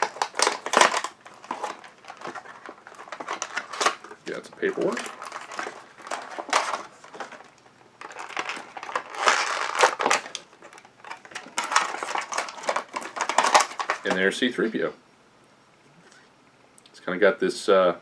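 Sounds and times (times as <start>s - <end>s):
toy packaging crinkling and rustling: 0.0s - 14.3s.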